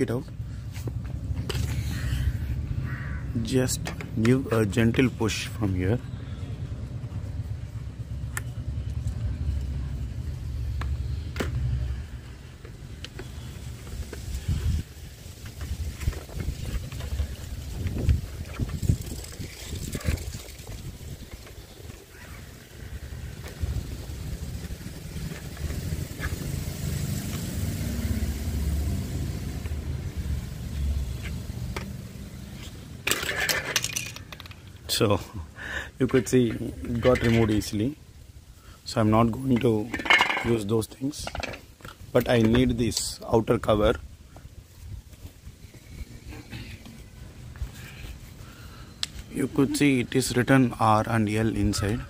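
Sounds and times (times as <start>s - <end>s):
steady low rumble: 6.3s - 26.5s.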